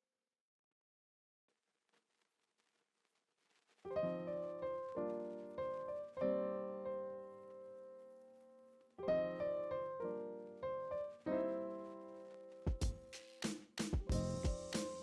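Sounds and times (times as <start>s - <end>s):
piano playing chords: 9.0s - 13.2s, 14.0s - 15.0s.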